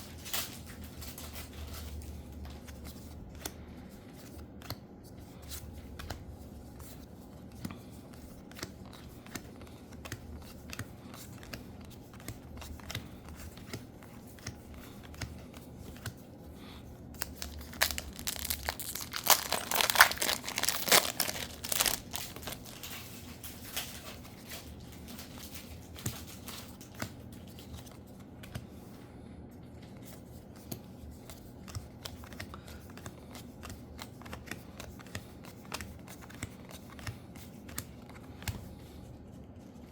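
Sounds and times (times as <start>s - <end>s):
trading cards clicking: 17.2s - 23.0s
foil wrapper crinkling and tearing: 17.2s - 25.6s.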